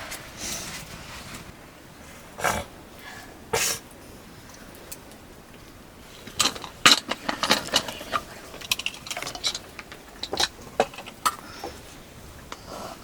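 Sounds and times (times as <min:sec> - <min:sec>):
metal utensils clattering: 0:06.2 - 0:11.4.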